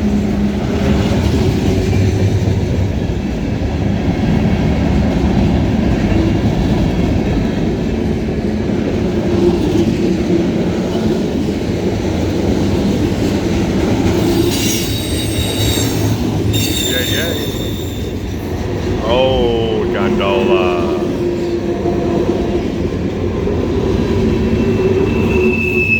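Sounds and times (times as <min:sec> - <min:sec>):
high-pitched wheel squeal: 0:14.5 - 0:18.3, 0:24.5 - 0:25.9.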